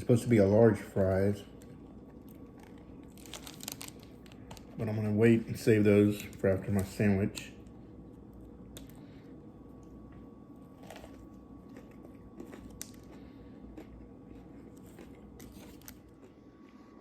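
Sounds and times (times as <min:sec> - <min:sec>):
person chewing: 0:09.8 - 0:17.0.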